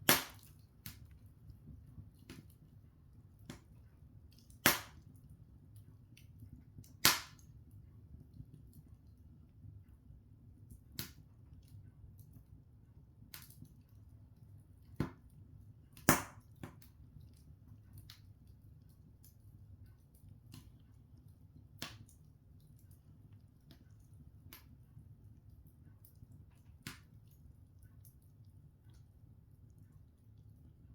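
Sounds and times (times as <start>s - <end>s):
burning logs popping and snapping: 0.0s - 1.3s, 4.3s - 5.3s, 6.1s - 7.5s, 13.3s - 13.8s, 16.0s - 24.8s, 26.0s - 27.5s
wood fire crackling: 0.0s - 30.9s.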